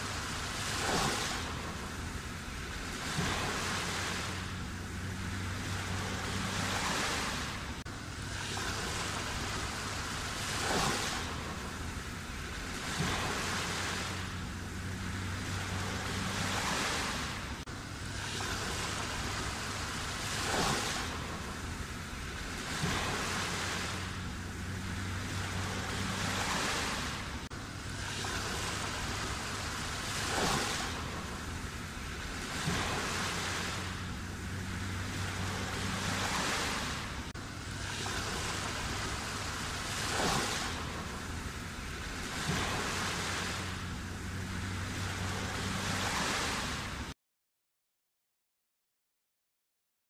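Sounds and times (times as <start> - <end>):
sea waves surging: 0.0 - 47.2
waves breaking: 0.0 - 47.2.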